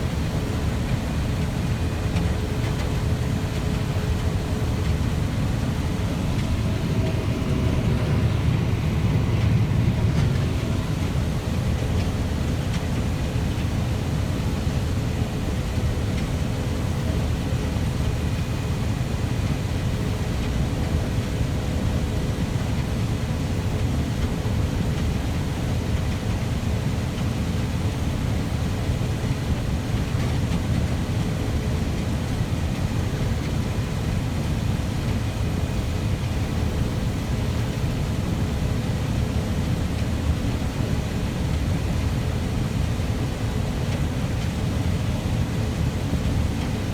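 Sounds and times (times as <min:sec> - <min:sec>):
steady hum: 0:00.0 - 0:15.3
heavy farm machinery engine rumble: 0:00.1 - 0:13.9.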